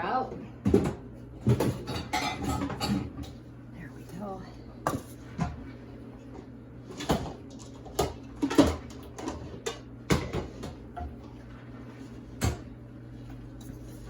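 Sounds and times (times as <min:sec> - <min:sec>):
low steady hum: 0:00.0 - 0:14.0
utensils and bowls clattering: 0:00.6 - 0:03.4, 0:06.9 - 0:11.5.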